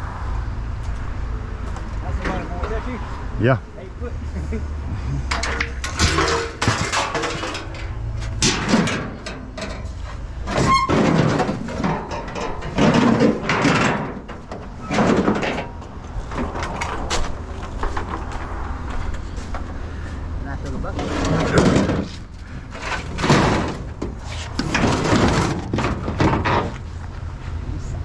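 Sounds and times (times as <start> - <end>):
scrap metal clanking and scraping: 5.0 - 27.5.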